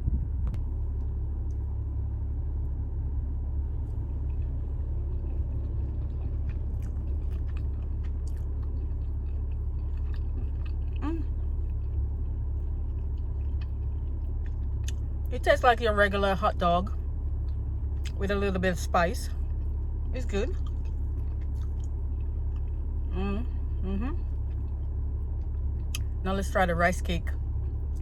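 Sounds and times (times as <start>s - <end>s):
steady low rumble: 0.0s - 28.0s
person chewing food: 3.8s - 15.3s, 17.2s - 18.2s, 19.4s - 26.2s
person humming: 11.0s - 11.3s, 23.1s - 24.2s.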